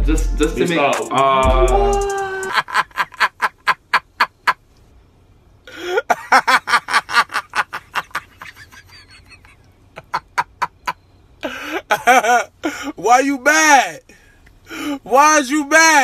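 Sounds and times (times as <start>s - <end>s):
person laughing: 1.3s - 4.6s, 5.7s - 12.6s.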